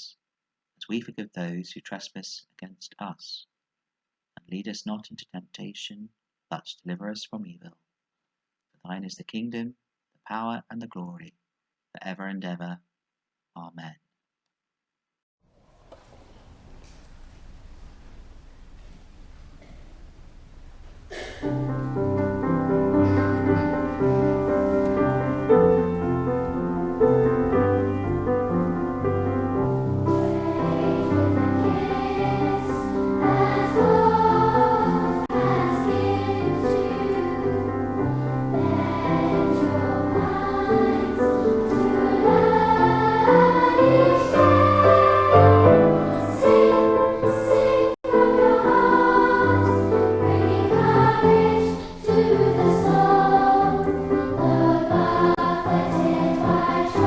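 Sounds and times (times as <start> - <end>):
choir singing a hymn: 21.5 - 57.0
instrumental accompaniment: 21.5 - 57.0.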